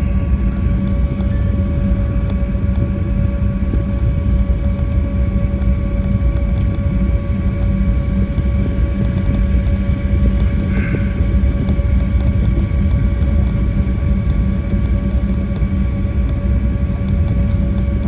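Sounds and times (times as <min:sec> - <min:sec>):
aircraft cabin engine rumble and whine: 0:00.0 - 0:18.0.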